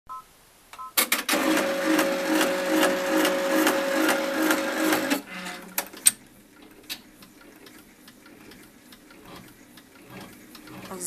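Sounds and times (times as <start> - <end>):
embroidery machine stitching: 1.0 - 11.0
machine clicks: 1.0 - 11.0
squeaking machine shaft: 9.2 - 11.0.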